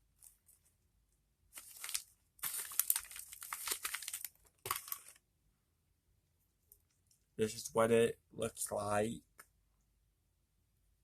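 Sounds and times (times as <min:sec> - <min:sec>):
plastic snack bag crinkling: 0:01.5 - 0:05.2.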